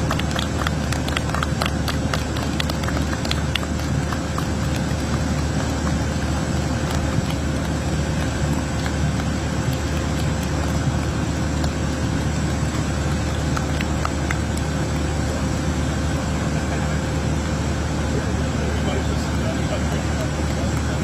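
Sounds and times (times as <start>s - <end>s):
low engine rumble: 0.0s - 21.0s.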